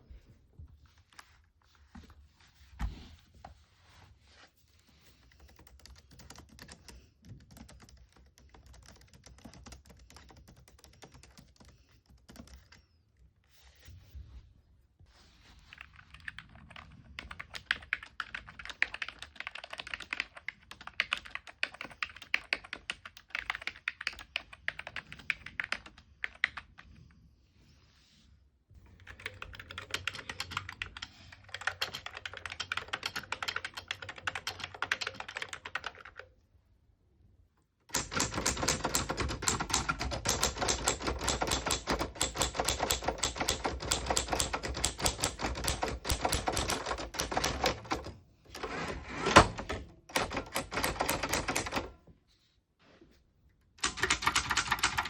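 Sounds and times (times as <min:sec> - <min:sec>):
keyboard typing clicks: 0:53.8 - 0:55.0.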